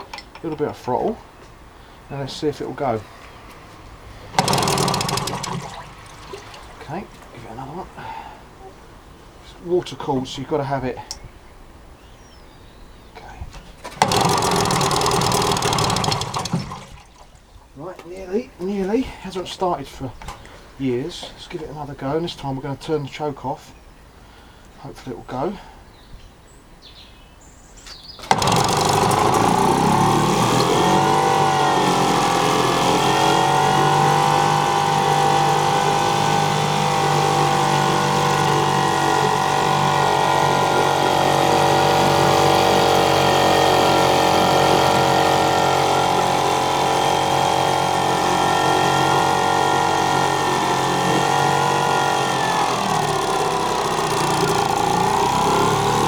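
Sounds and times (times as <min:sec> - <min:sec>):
outboard motor running: 0:04.0 - 0:07.3, 0:13.8 - 0:17.4, 0:28.2 - 0:56.0.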